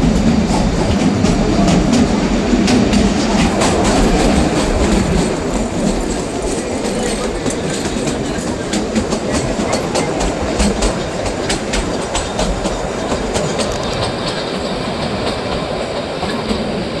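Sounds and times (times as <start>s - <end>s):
train carriages rumbling: 0.0s - 17.0s.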